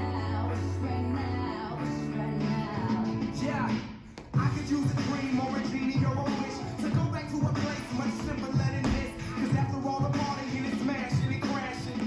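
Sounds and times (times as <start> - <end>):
hip hop beat: 3.1 - 12.0.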